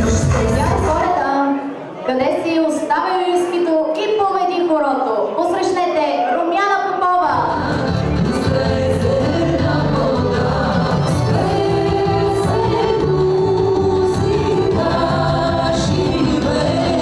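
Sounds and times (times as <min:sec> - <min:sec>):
woman singing: 0:07.3 - 0:17.0.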